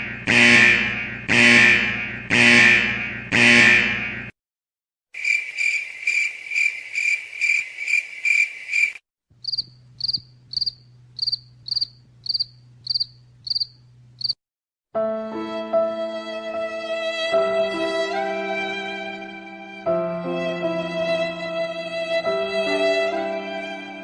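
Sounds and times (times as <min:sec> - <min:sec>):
high sharp cricket chirp: 0:05.2 - 0:14.4
low cricket chirp: 0:05.2 - 0:14.4
low steady hum: 0:09.4 - 0:14.3.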